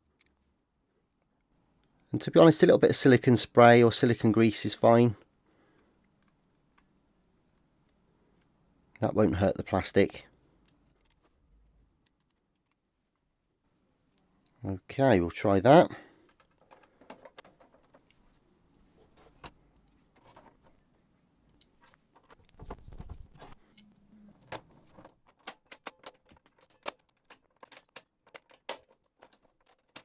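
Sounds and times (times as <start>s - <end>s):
plastic cassette keys clicking: 24.5s - 30.0s.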